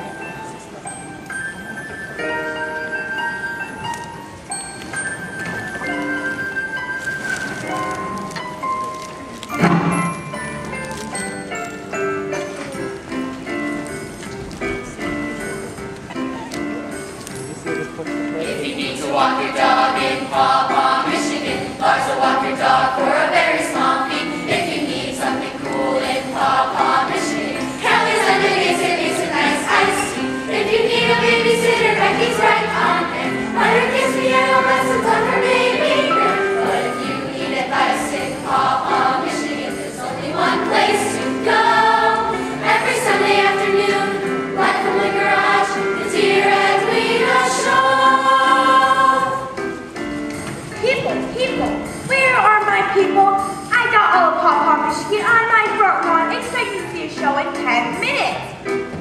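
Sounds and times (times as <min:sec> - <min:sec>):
instrumental backing music: 0:00.0 - 0:59.0
group of voices singing: 0:18.4 - 0:49.6.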